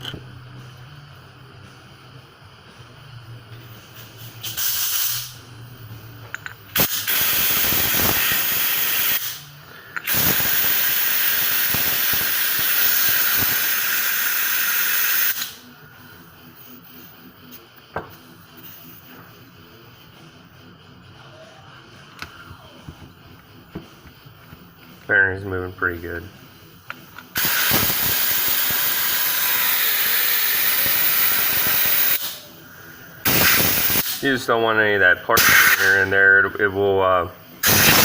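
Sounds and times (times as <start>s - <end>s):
aerosol spray hissing: 4.0s - 5.4s, 10.0s - 15.5s, 27.4s - 32.6s, 33.2s - 34.2s, 37.6s - 38.0s.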